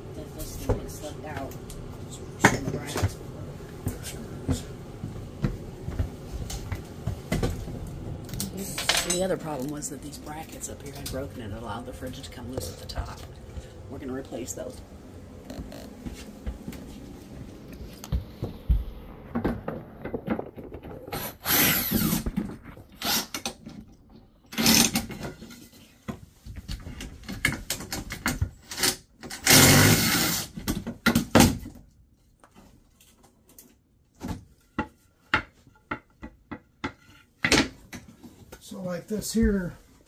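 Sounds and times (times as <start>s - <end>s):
power drill running: 21.2s - 22.2s, 23.0s - 23.4s.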